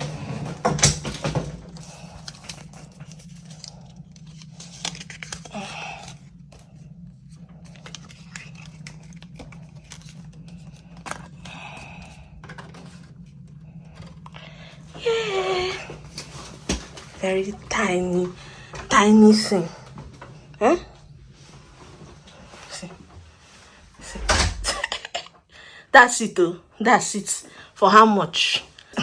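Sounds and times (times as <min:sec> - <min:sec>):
knocks clicks and rustles of handling: 0:00.0 - 0:05.6, 0:15.9 - 0:19.1
steady low hum: 0:00.0 - 0:28.0.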